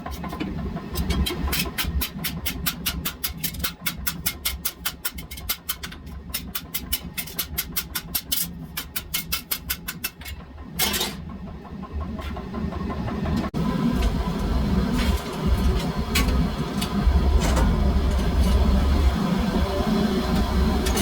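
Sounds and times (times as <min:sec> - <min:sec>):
low rumble: 0:10.6 - 0:21.0.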